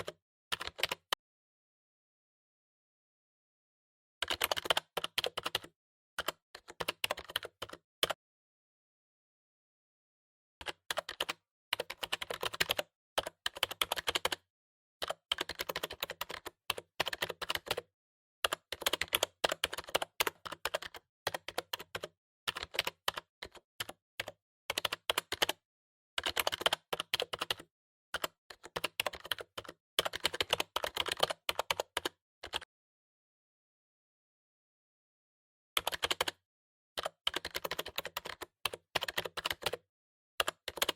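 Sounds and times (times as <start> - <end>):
typing on keyboard: 0.0 - 1.2, 4.2 - 8.2, 10.6 - 14.4, 15.0 - 25.6, 26.2 - 32.7, 35.8 - 36.4, 37.0 - 39.8, 40.4 - 40.9.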